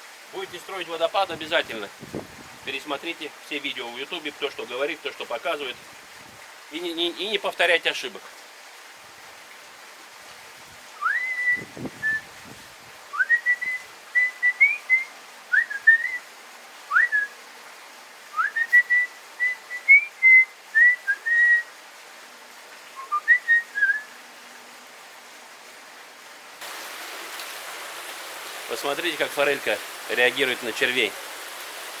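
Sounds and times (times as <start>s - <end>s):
person whistling a tune: 11.0s - 12.3s, 13.2s - 16.2s, 16.9s - 17.4s, 18.4s - 21.7s, 23.0s - 24.2s.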